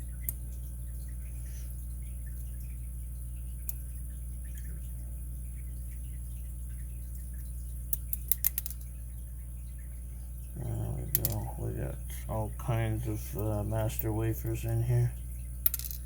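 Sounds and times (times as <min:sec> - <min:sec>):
steady low hum: 0:00.0 - 0:16.0
small metal clicks: 0:07.9 - 0:08.9, 0:11.1 - 0:11.4, 0:15.6 - 0:16.0.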